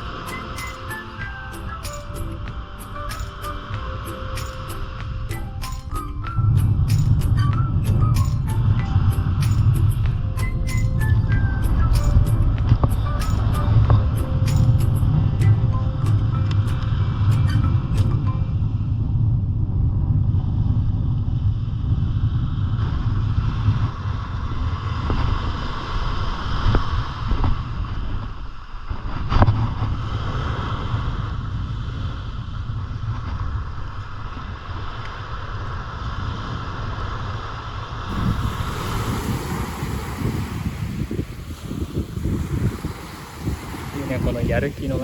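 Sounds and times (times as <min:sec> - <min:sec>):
waves: 0:00.0 - 0:19.0, 0:21.2 - 0:45.0
wind buffeting microphone: 0:00.0 - 0:45.0.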